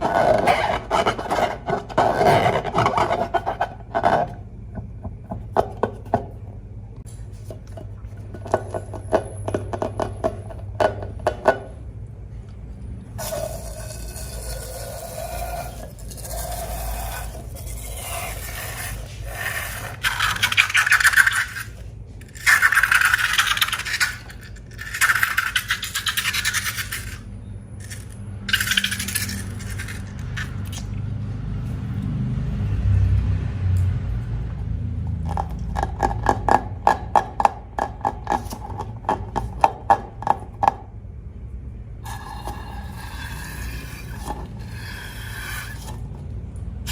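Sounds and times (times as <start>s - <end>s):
harsh scraping and rustling: 0.0s - 6.4s, 13.2s - 32.0s.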